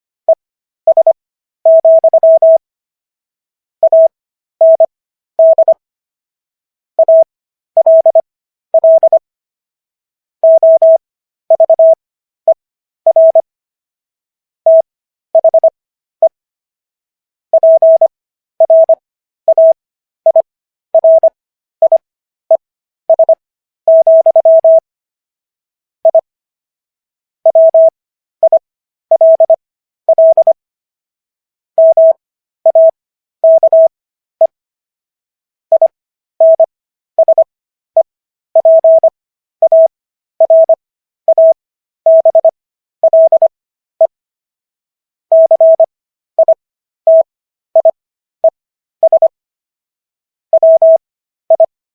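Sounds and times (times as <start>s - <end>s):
morse code beeps: 0.3s - 2.6s, 3.8s - 5.8s, 7.0s - 8.2s, 8.8s - 9.2s, 10.4s - 12.0s, 13.1s - 13.5s, 14.7s - 15.7s, 17.6s - 24.8s, 26.0s - 26.2s, 27.5s - 30.6s, 31.8s - 34.6s, 35.7s - 44.2s, 45.3s - 49.4s, 50.5s - 51.8s.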